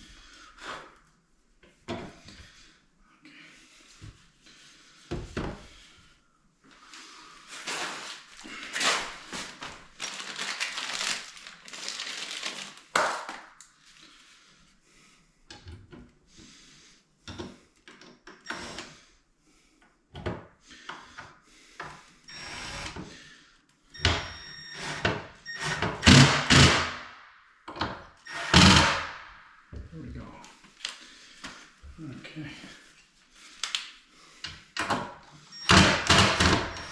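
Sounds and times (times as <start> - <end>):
rubbing and scraping on wood: 6.8 - 12.6.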